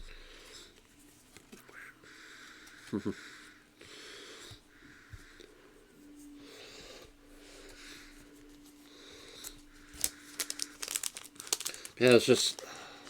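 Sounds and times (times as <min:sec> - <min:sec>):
soft breathing: 0:00.0 - 0:12.0, 0:12.6 - 0:13.0
faint steady hum: 0:00.0 - 0:13.0
cards clicking and snapping: 0:09.4 - 0:12.7
trading cards handled: 0:09.4 - 0:12.7.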